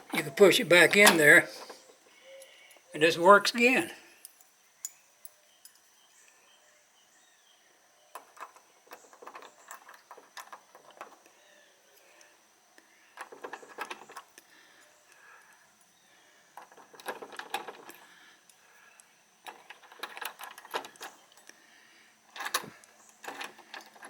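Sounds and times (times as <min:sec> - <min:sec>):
screen door latch clicking and rattling: 0:00.5 - 0:01.5, 0:08.2 - 0:11.2, 0:13.2 - 0:14.3, 0:16.6 - 0:17.9, 0:19.4 - 0:21.2, 0:22.3 - 0:24.0.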